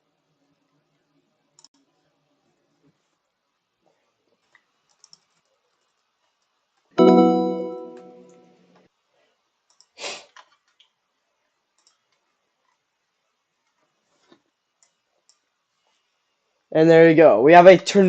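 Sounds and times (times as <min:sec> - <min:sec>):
mouse and keyboard clicks: 0:04.5 - 0:05.5, 0:11.8 - 0:12.2
computer alert chime: 0:07.0 - 0:08.4.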